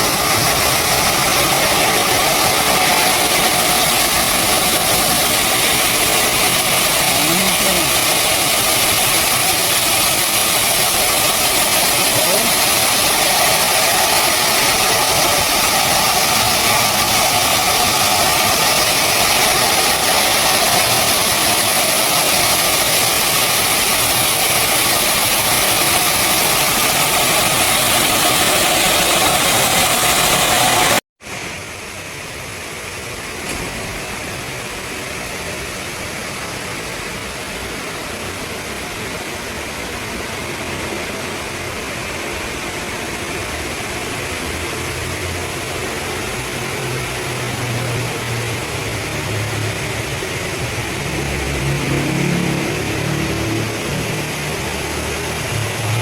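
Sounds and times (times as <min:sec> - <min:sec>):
heavy machinery droning: 0:00.0 - 0:31.0, 0:42.7 - 0:56.0
quieter machine noise: 0:00.0 - 0:56.0.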